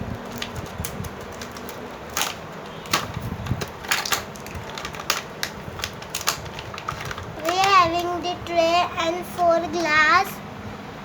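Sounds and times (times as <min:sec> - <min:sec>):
packaging rustling: 0:00.0 - 0:08.3
plastic toy pieces clattering: 0:00.1 - 0:08.3.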